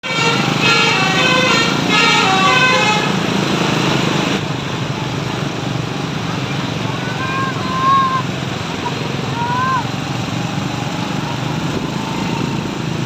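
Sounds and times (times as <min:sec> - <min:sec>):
bus musical horn playing tune: 0:00.0 - 0:03.4.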